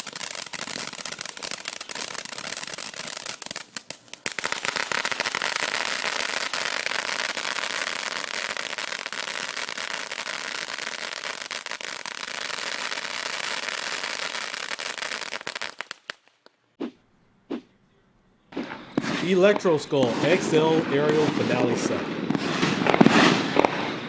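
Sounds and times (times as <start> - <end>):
sharp firework pops: 0.0 - 7.9, 20.0 - 21.7
firework fountain crackling: 0.0 - 16.4, 18.7 - 24.0.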